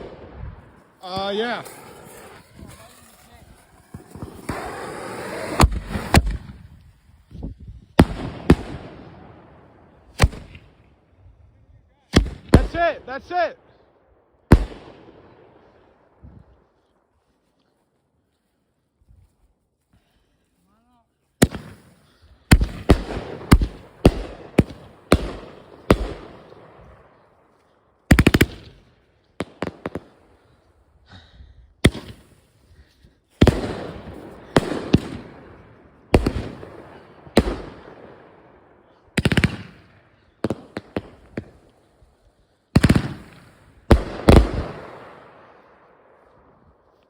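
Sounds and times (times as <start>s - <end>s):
fireworks bangs with echo: 0.0s - 6.7s, 8.0s - 9.4s, 21.4s - 27.2s, 31.8s - 32.4s, 33.4s - 41.7s, 42.8s - 46.3s.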